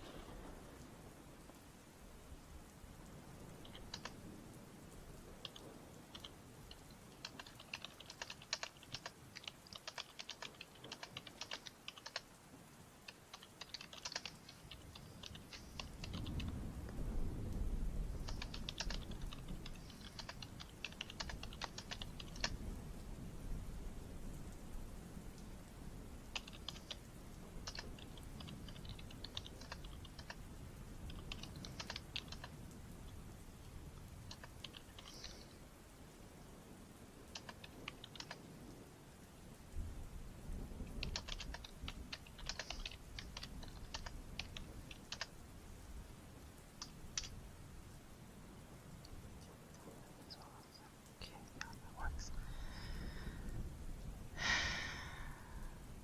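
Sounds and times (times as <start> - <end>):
typing on computer keyboard: 3.6 - 4.2, 5.4 - 12.4, 13.1 - 16.6, 18.2 - 22.6, 26.3 - 30.4, 31.0 - 32.6, 34.3 - 35.5, 37.3 - 38.4, 40.9 - 45.4, 46.8 - 47.4.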